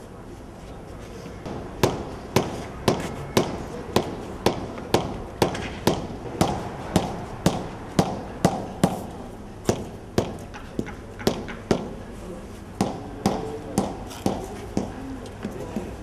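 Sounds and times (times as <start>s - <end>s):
hand hammer knocking: 9.7s - 12.0s.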